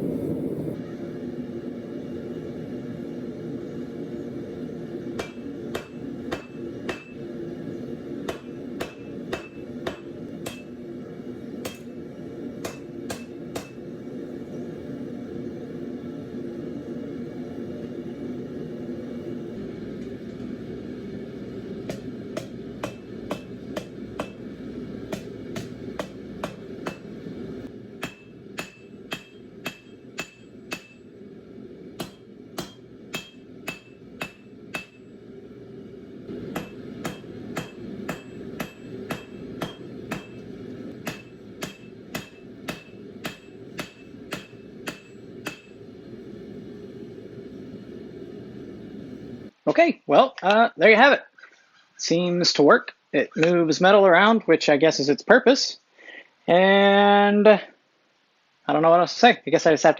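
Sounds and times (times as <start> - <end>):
low forge rumble: 0.0 - 49.8
hammer ringing on anvil: 5.2 - 7.2, 8.3 - 10.8, 11.6 - 12.0, 12.6 - 13.8, 21.9 - 24.5, 25.1 - 27.2, 28.0 - 31.0, 32.0 - 35.1, 36.5 - 45.8.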